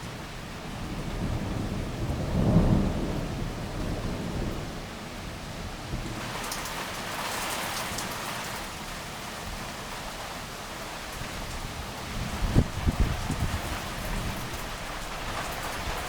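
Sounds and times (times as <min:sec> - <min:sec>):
heavy rain falling: 0:00.0 - 0:16.0
thunder rumble: 0:00.8 - 0:04.8, 0:11.3 - 0:16.0
raindrops spattering on surface: 0:06.0 - 0:16.0.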